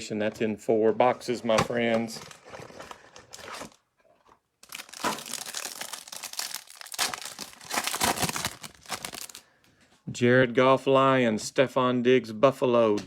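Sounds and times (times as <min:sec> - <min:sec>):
plastic wrapping tearing and crinkling: 0:04.6 - 0:09.4.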